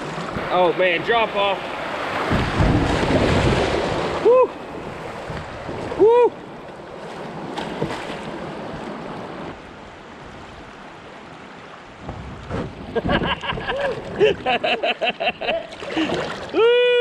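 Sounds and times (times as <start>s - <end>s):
rushing river water: 0.0s - 17.0s
kayak knocks and splashes: 2.0s - 4.2s, 6.7s - 9.6s, 12.0s - 14.6s
person whooping: 4.2s - 4.6s, 6.0s - 6.4s, 16.5s - 17.0s.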